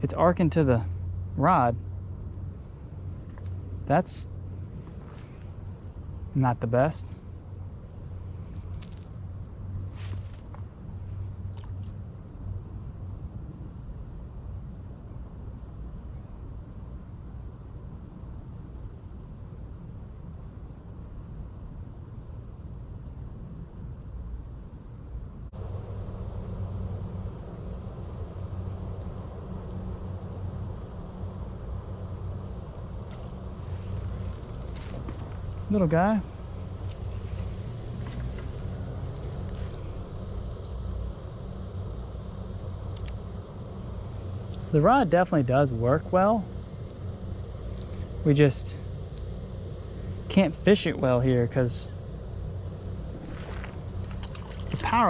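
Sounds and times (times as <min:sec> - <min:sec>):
insect trilling: 0:31.2 - 0:55.0.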